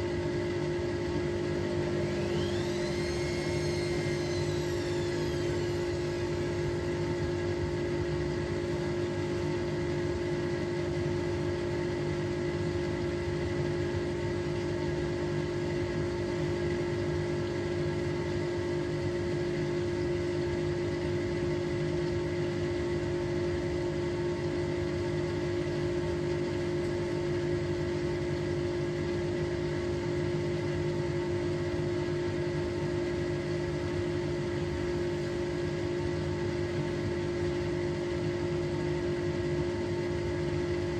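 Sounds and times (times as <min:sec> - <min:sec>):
washing machine motor whine: 0:00.0 - 0:40.9.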